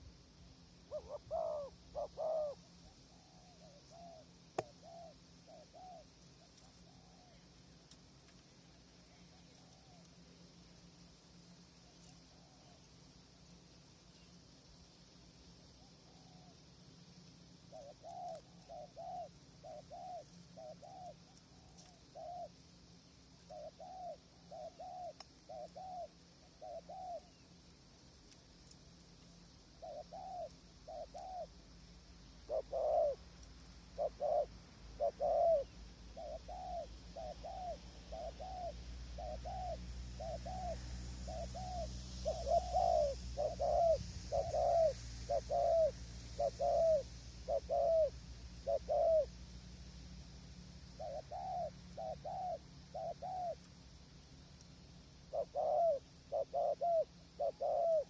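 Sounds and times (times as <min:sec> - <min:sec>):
doves cooing: 0:00.8 - 0:07.8, 0:17.6 - 0:22.6, 0:23.3 - 0:27.5, 0:29.8 - 0:31.6, 0:32.4 - 0:49.6, 0:50.7 - 0:53.7, 0:55.2 - 0:58.0.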